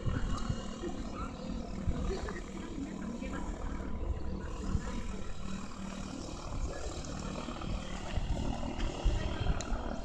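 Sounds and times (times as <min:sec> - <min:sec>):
wind buffeting microphone: 0:00.0 - 0:02.6, 0:07.6 - 0:10.0
distant propeller engines droning: 0:00.0 - 0:10.0.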